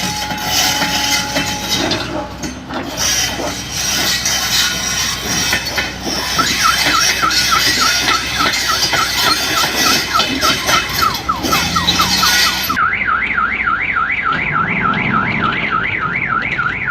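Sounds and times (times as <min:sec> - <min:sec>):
gravel clanks and rattling: 0:00.0 - 0:12.8
excavator engine and hydraulics: 0:00.0 - 0:16.9.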